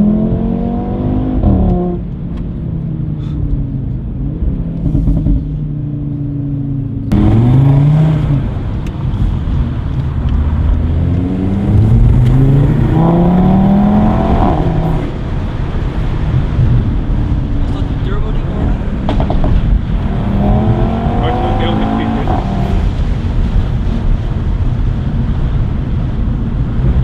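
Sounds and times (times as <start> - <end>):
car engine accelerating hard: 0.0 - 27.0
exhaust pops: 4.8 - 5.6, 14.3 - 24.9.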